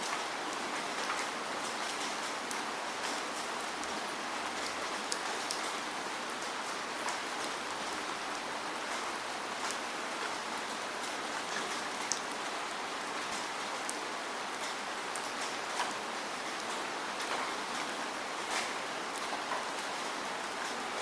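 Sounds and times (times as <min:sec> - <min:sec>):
steady rain hiss: 0:00.0 - 0:21.0.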